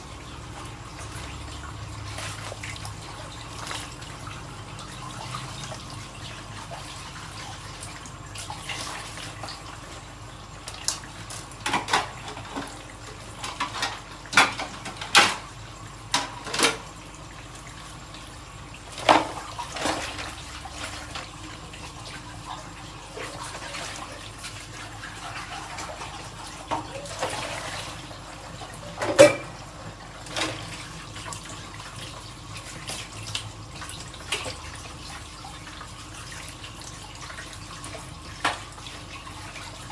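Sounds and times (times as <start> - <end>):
tap water running: 0.0 - 39.9
dishes clinking and knocking: 29.0 - 29.6.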